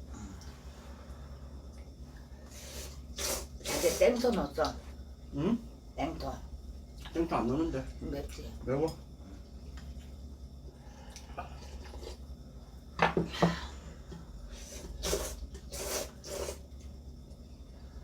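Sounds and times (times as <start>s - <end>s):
slurping noodles: 2.6s - 4.0s, 14.6s - 16.6s.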